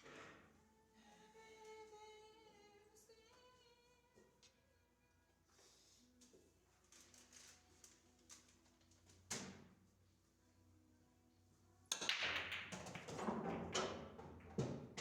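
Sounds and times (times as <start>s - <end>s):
pool balls clacking: 11.9s - 15.0s.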